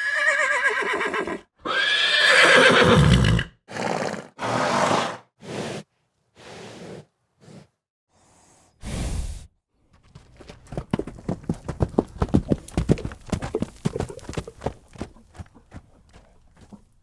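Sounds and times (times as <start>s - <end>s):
horse snorting: 0.2s - 5.8s, 6.4s - 7.7s
hooves clattering on hard ground: 9.8s - 17.0s.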